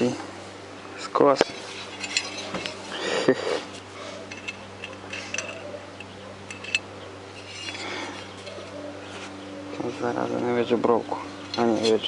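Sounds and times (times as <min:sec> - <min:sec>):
low steady hum: 0:00.0 - 0:12.0
metal tools clinking: 0:01.3 - 0:03.3, 0:04.1 - 0:08.7, 0:11.3 - 0:12.0.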